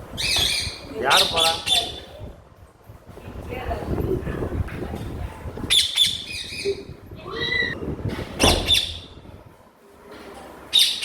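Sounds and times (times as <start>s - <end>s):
parrot squawking: 0.2s - 2.1s, 5.7s - 7.8s.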